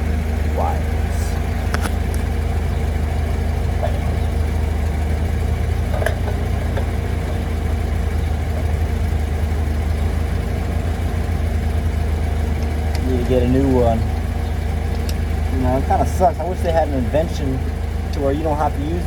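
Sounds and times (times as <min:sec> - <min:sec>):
engine idling: 0:00.0 - 0:19.0
faint clicks: 0:14.8 - 0:15.3.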